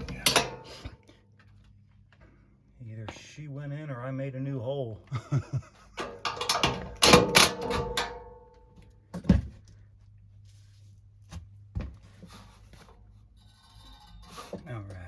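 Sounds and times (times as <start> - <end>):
metal parts clattering: 0.0 - 0.9, 6.0 - 8.4
metallic ringing: 0.1 - 0.9, 6.0 - 8.6.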